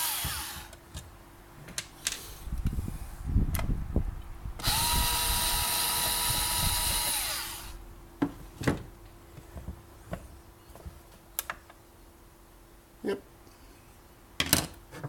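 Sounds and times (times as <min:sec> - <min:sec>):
electric drill running: 0:00.0 - 0:00.8, 0:04.6 - 0:07.8.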